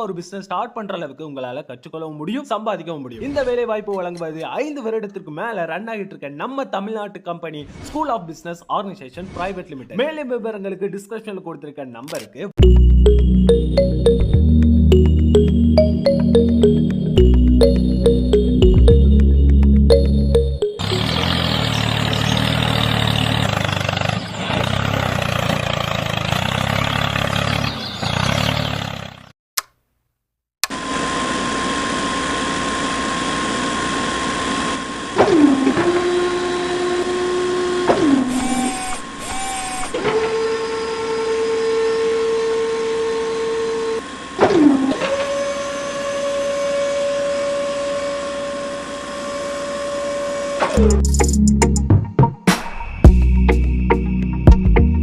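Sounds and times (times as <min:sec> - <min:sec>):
small electric motors whirring: 0:38.2 - 0:40.0.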